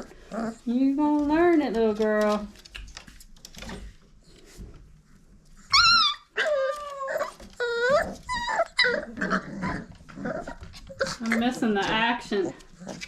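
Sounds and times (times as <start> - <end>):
puppies whining and yelping: 5.2 - 11.4.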